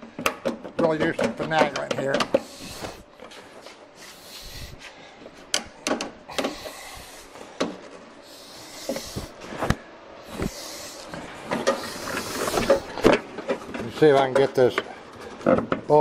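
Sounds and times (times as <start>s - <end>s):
scraping and rustling: 8.7s - 15.5s.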